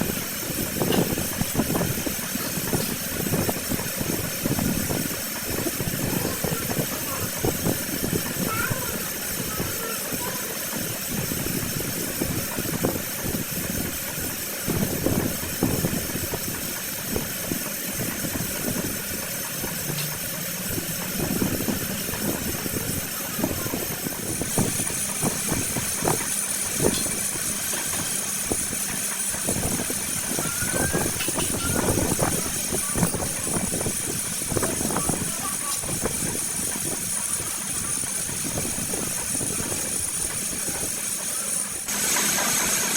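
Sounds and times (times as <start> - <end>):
machinery whining: 0.0 - 42.9
knocks and metal clatter: 30.9 - 33.8.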